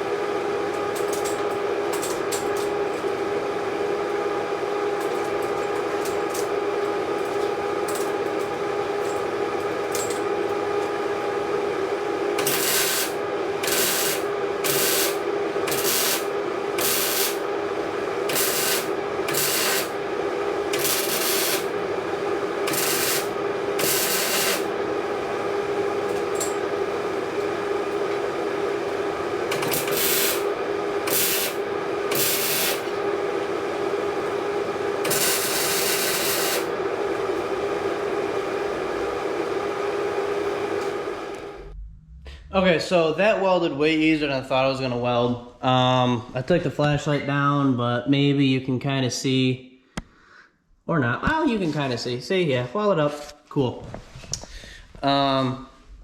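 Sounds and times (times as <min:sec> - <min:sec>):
steady hum: 0:00.0 - 0:47.0
welding arc crackling hiss: 0:12.4 - 0:17.5, 0:18.2 - 0:21.8, 0:22.4 - 0:24.8, 0:29.5 - 0:33.0, 0:35.0 - 0:37.4.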